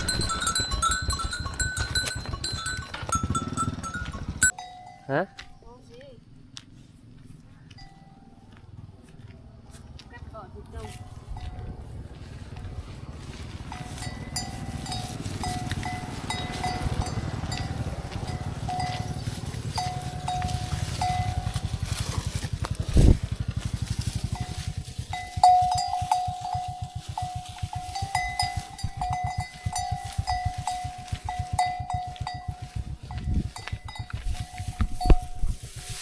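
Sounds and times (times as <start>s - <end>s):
fast low pulsing: 0.0s - 4.5s, 11.5s - 36.0s
livestock bell clanking: 0.0s - 5.8s, 7.8s - 8.5s, 13.6s - 22.2s, 23.6s - 36.0s.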